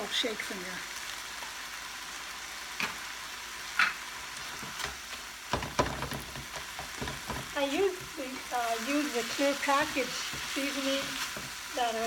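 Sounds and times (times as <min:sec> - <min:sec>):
meat sizzling in a frying pan: 0:00.0 - 0:12.0
utensil knocking against pan: 0:05.5 - 0:07.6.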